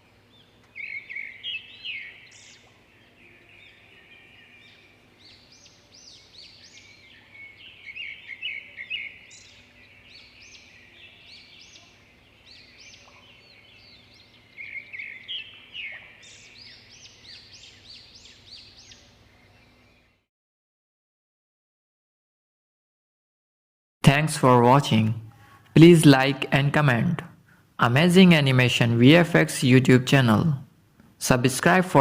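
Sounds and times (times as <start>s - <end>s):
small birds singing and chirping: 0.0s - 20.3s.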